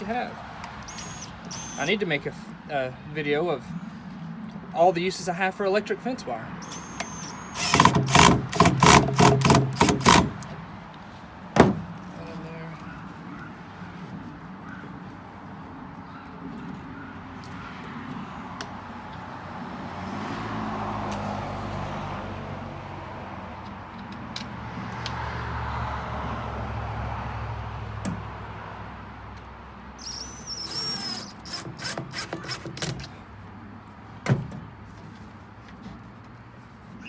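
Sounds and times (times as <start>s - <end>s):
vehicles passing on highway: 0.0s - 37.0s.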